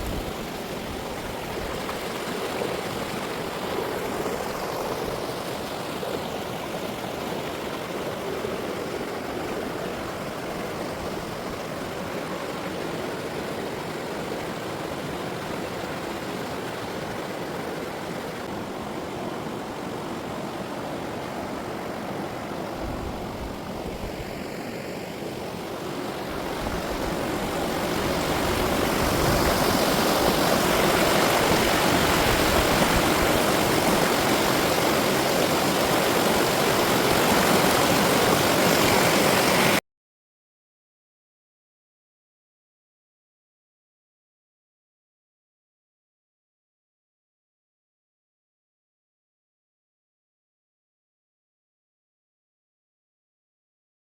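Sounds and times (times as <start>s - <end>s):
stream rushing over rocks: 0.0s - 39.8s.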